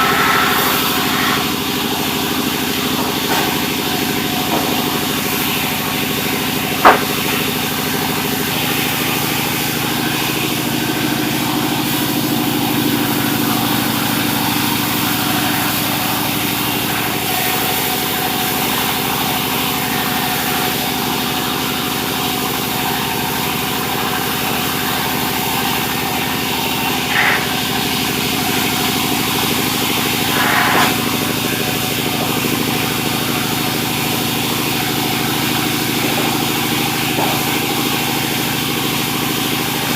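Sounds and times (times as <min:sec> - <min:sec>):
sawmill machinery engine drone: 0:00.0 - 0:39.9
sharp knock: 0:06.8 - 0:07.3.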